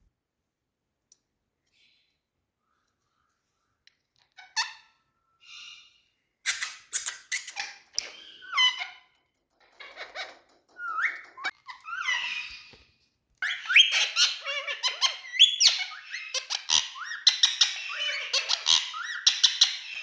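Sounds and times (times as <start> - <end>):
parrot squawking and screeching: 4.4 - 12.8, 13.4 - 20.0.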